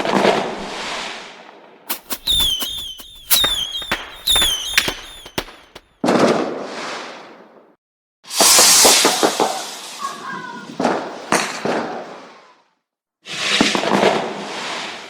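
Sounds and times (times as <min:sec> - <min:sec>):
fireworks cracking: 0:01.9 - 0:05.9
fireworks whistling: 0:01.9 - 0:05.9
loud firework bursts: 0:01.9 - 0:05.9.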